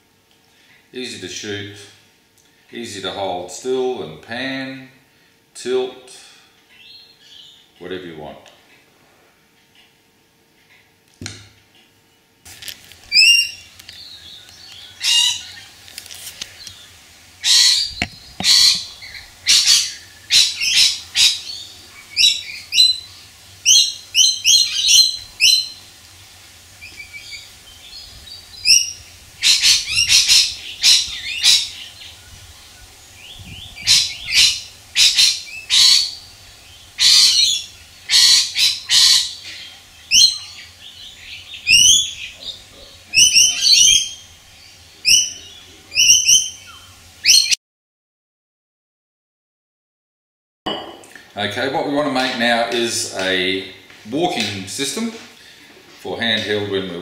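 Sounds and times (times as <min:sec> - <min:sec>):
birds chirping: 0:13.0 - 0:47.6.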